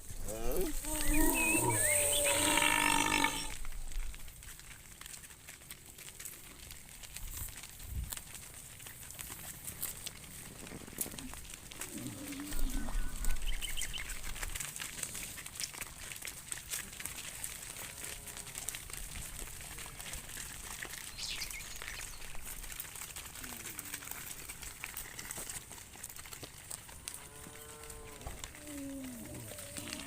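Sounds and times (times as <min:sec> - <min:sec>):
crackling rustle: 0:00.0 - 0:30.0
faint bird chirps: 0:01.0 - 0:02.6.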